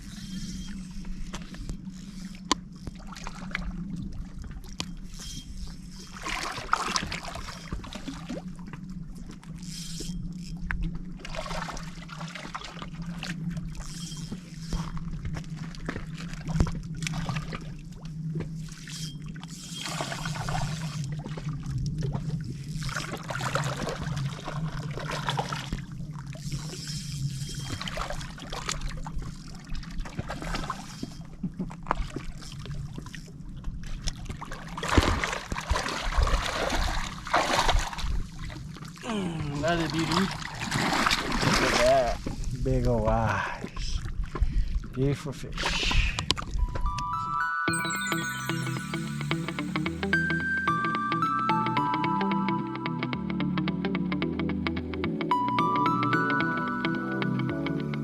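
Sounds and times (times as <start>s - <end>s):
water sloshing and trickling: 0.0s - 45.6s.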